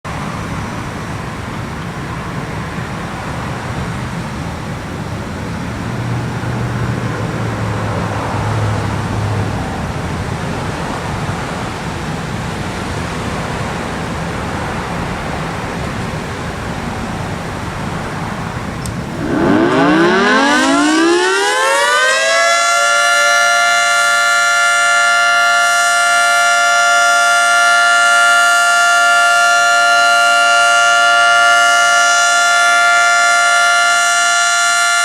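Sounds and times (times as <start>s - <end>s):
road traffic noise: 0.0s - 35.0s
passing vehicle engine hum: 0.1s - 21.4s.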